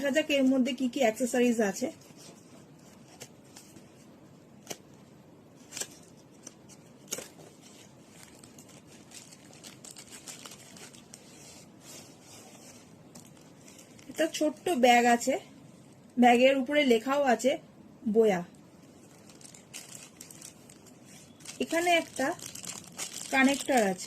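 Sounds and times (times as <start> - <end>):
packaging rustling and crinkling: 5.6 - 14.6, 19.0 - 24.0.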